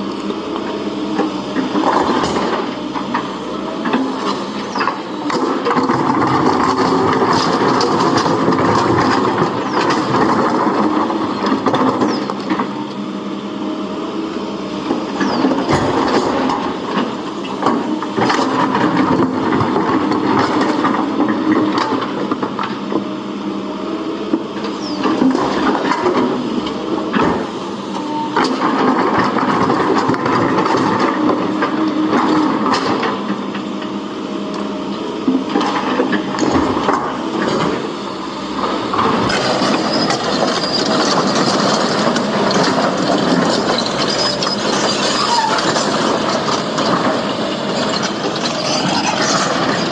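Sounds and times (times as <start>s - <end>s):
heavy machinery engine running: 0.0s - 49.9s.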